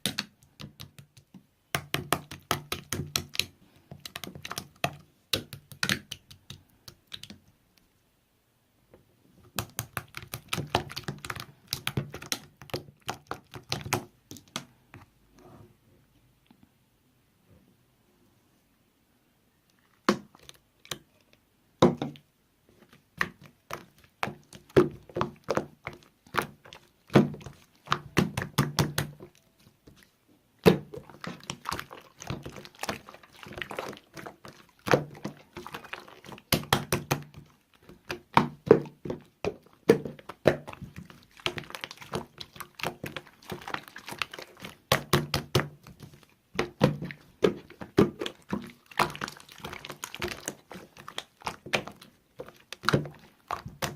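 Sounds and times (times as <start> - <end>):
slime squeezed with popping bubbles: 9.5 - 14.7, 23.2 - 29.6, 30.6 - 53.9.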